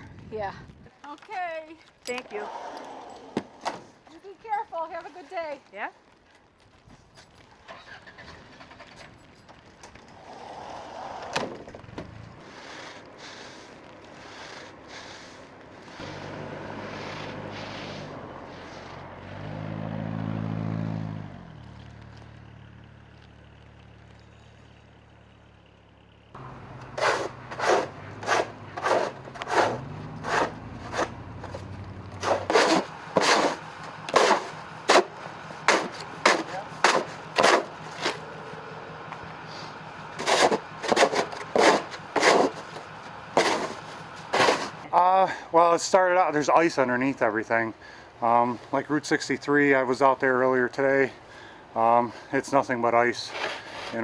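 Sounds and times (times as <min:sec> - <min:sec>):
vehicle passing: 0:02.3 - 0:04.0, 0:09.9 - 0:54.0
low engine hum: 0:07.3 - 0:45.6.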